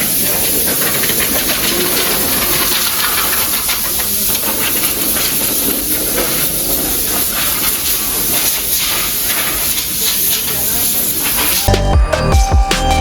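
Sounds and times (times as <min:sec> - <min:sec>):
high-pressure water spray hissing: 0:00.0 - 0:11.7.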